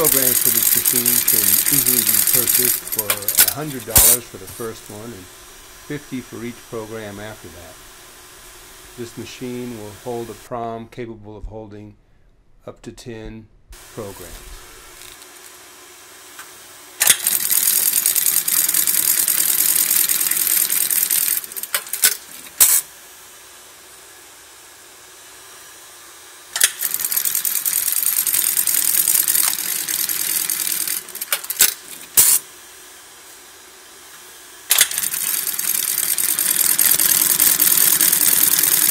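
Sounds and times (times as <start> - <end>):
sewing machine sharp clicks: 0.0 - 4.2, 17.0 - 22.8, 26.6 - 32.4, 34.7 - 38.9
sewing machine rapid stitching: 0.0 - 4.7, 17.0 - 22.8, 26.6 - 32.4, 34.7 - 38.9.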